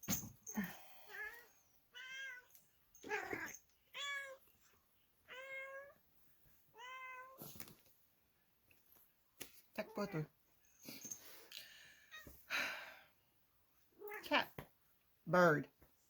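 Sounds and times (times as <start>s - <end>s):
cat meowing: 1.9s - 4.4s, 5.2s - 6.0s, 6.7s - 7.4s.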